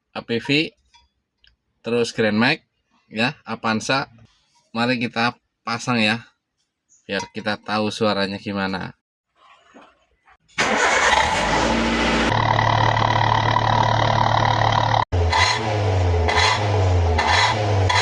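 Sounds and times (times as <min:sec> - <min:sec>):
car engine starting and idling: 0:10.6 - 0:18.0
engine revving blips: 0:10.6 - 0:18.0.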